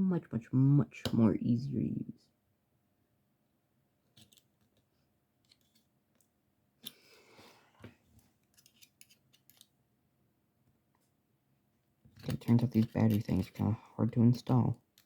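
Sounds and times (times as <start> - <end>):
small metal clicks: 8.4 - 9.7
pliers scraping plastic: 8.5 - 9.7.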